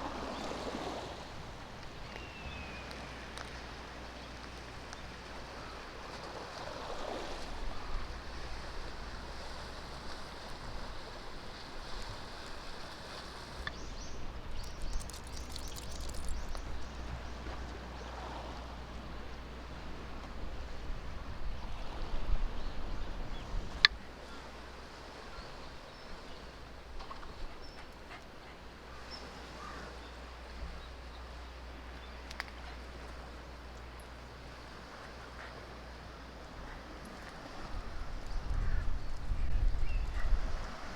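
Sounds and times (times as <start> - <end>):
water lapping at shore: 0.0 - 40.9
wind on microphone: 37.4 - 40.9.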